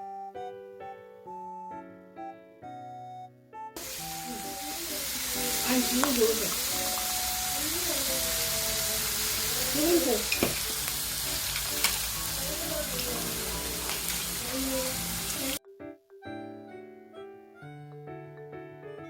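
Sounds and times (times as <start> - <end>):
background piano music: 0.0 - 19.0
food sizzling in a pan: 3.8 - 15.6
faint voices: 3.9 - 10.9, 11.7 - 15.6.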